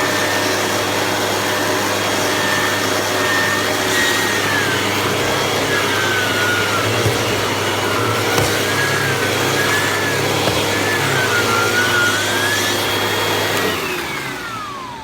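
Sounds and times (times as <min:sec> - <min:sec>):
vacuum cleaner running: 0:00.0 - 0:15.0
vacuum motor spinning down: 0:00.0 - 0:15.0.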